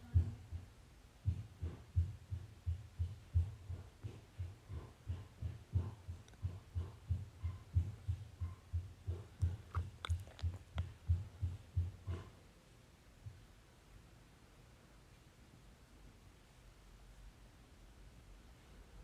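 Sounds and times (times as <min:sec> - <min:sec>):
low thumping beat: 0:00.0 - 0:12.3.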